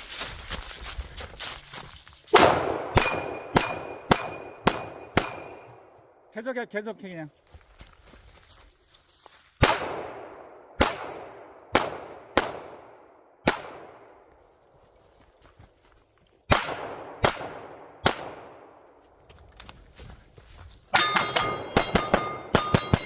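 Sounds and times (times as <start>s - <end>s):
pistol shots echoing: 2.3s - 5.9s, 9.6s - 14.0s, 16.5s - 18.8s, 21.0s - 23.0s.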